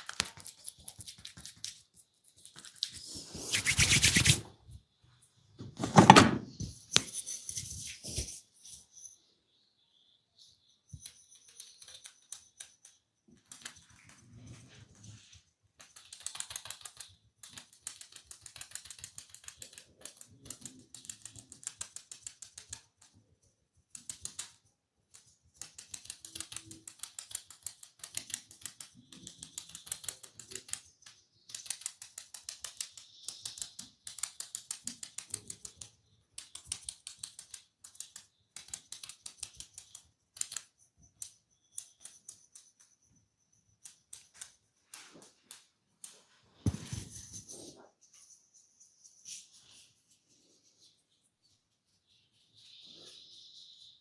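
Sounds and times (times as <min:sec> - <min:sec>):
scratching on hair: 0:00.0 - 0:04.5.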